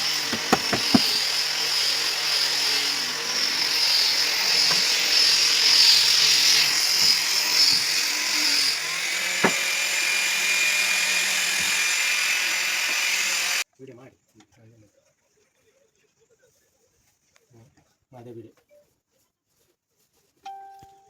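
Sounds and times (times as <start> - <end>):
electric power tool whining: 0.0 - 13.6.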